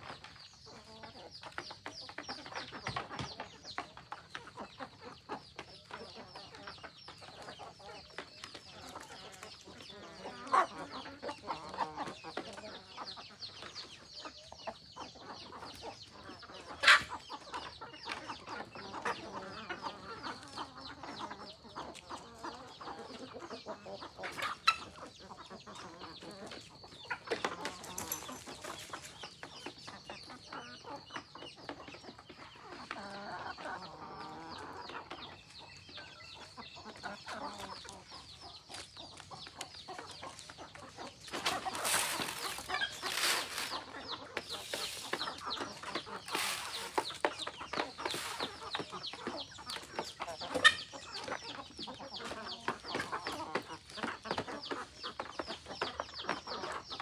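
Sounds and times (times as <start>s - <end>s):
chickens clucking: 0.0s - 57.0s
scratchy noises: 41.2s - 49.4s.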